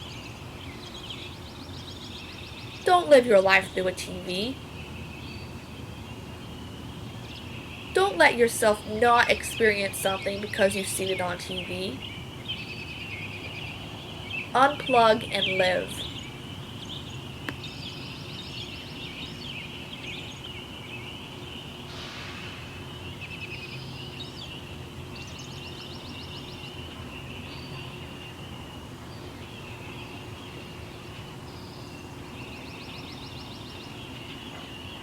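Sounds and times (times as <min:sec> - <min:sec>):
songbirds singing: 0:00.0 - 0:35.0
brief rushing noise: 0:21.9 - 0:22.8.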